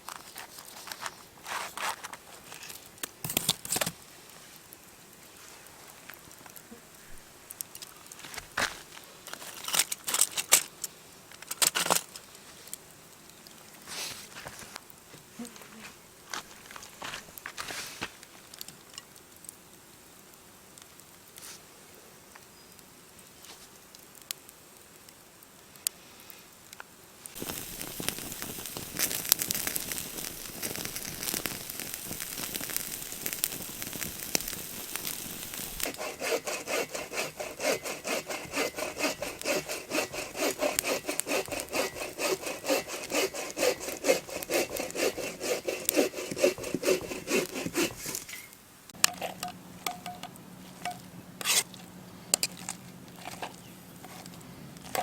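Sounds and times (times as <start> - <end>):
hand saw cutting wood: 35.0 - 48.5, 51.4 - 51.7.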